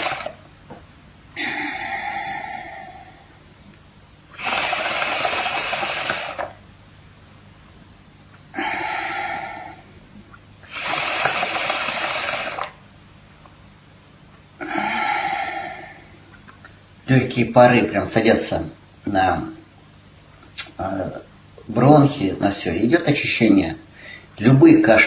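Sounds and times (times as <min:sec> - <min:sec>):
person exhaling: 0:01.4 - 0:03.4, 0:08.5 - 0:10.0, 0:14.6 - 0:16.2.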